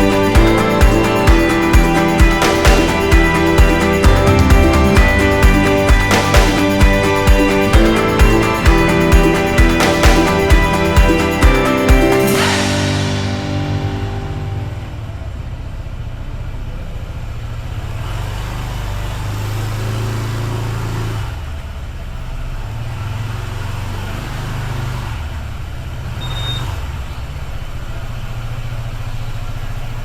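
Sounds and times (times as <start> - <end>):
short high-pitched tone: 0.0 - 15.6
vehicle engine running: 0.0 - 19.8.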